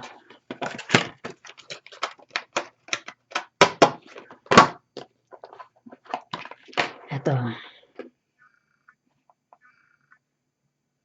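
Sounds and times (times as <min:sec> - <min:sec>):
packaging crackling and clicking: 0:00.0 - 0:04.7, 0:05.4 - 0:07.0
packaging snaps: 0:00.5 - 0:04.8.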